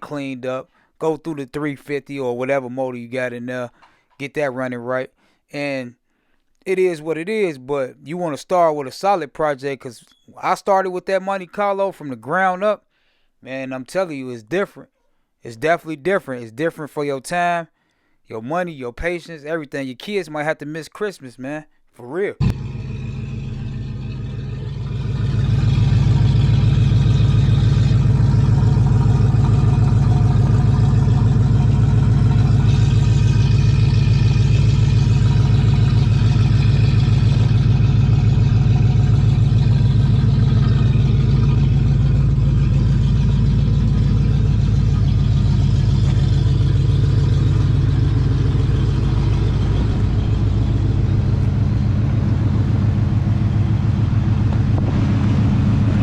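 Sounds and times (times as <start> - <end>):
car engine running: 22.4 - 56.0.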